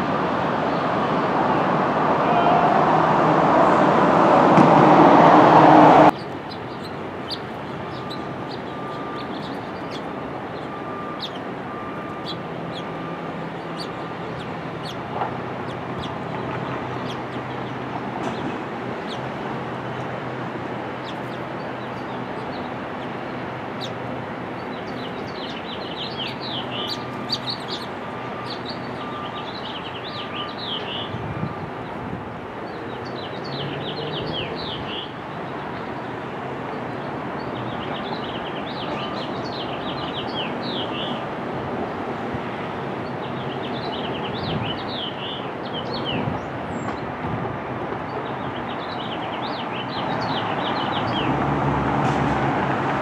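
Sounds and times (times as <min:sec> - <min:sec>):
small birds chirping: 0:06.1 - 0:31.2, 0:43.0 - 0:47.0.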